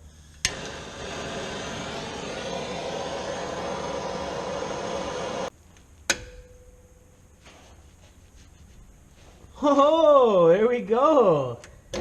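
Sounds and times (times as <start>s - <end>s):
propane torch hissing: 0.0s - 5.6s.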